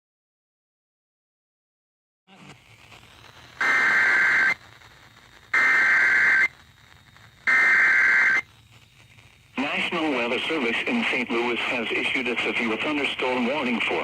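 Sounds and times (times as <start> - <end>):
radio hiss: 2.3 - 14.0
two-tone digital data bursts: 3.6 - 4.6, 5.5 - 6.6, 7.4 - 8.5.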